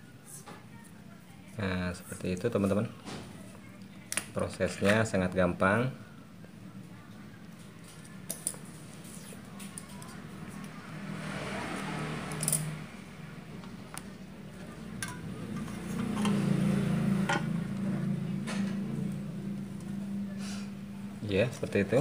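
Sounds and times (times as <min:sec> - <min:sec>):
low steady hum: 0:12.4 - 0:22.0.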